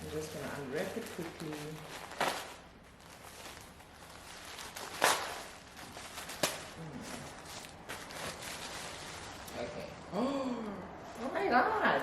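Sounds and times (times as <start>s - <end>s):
packaging ripping: 0.8s - 9.6s.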